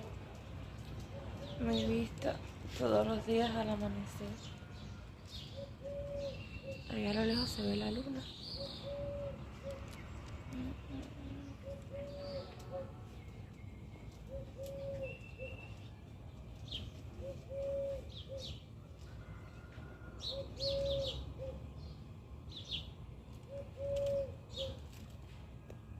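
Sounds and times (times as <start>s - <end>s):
small birds chirping: 0.0s - 19.2s, 20.2s - 25.2s
dove cooing: 1.0s - 2.3s, 5.4s - 7.7s, 8.5s - 13.3s, 14.2s - 15.9s, 16.7s - 21.8s, 23.3s - 25.1s.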